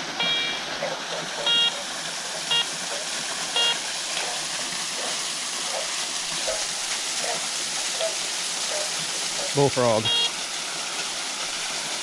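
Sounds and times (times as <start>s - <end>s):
creek water rushing: 0.0s - 12.0s
metal detector beep: 0.2s - 0.6s, 1.4s - 1.8s, 3.6s - 3.8s, 10.0s - 10.3s.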